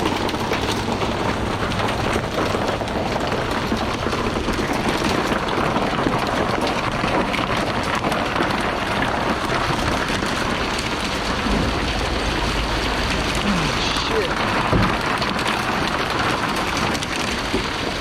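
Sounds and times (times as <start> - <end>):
hard rain pattering: 0.0 - 18.0
low rumble: 9.3 - 16.2.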